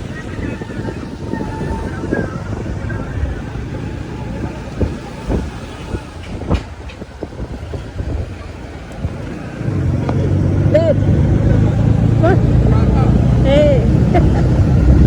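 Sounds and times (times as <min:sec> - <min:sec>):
vehicle rumbling over rough road: 0:00.0 - 0:15.0.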